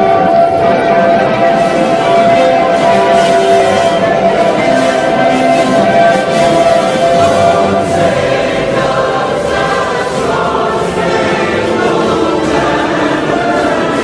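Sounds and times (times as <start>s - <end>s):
choir singing sustained chords: 0.0s - 14.0s.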